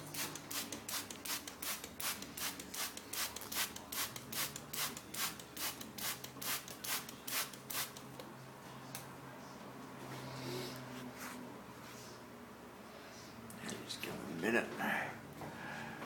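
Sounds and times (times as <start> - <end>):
spray bottle squirting: 0.1 - 8.1.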